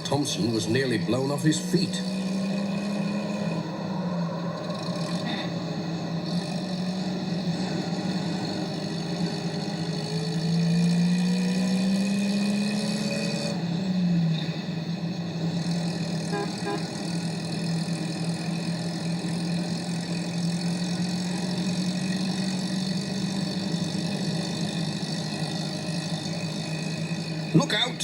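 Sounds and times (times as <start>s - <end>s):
van engine droning: 0.0s - 28.0s.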